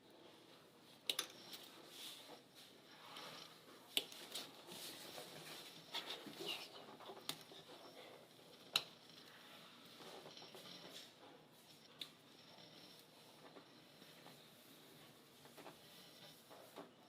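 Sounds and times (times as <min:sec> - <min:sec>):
tools clicking and knocking: 0:01.1 - 0:01.7.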